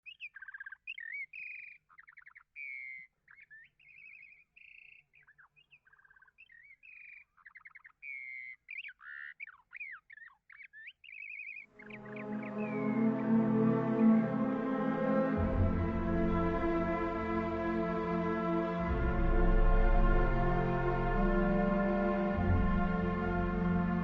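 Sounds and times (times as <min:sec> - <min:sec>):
bird singing: 0:00.0 - 0:19.0
music with bowed strings: 0:11.8 - 0:24.0.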